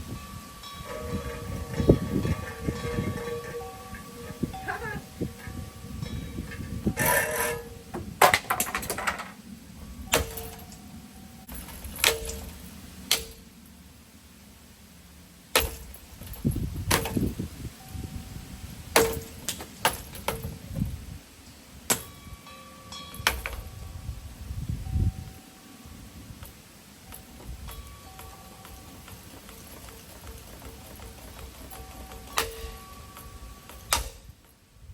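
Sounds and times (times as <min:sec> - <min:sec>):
short clanging ring: 0:00.0 - 0:13.7, 0:15.5 - 0:34.7
hard hits on metal fan: 0:10.0 - 0:10.8, 0:15.5 - 0:17.4, 0:18.9 - 0:20.9.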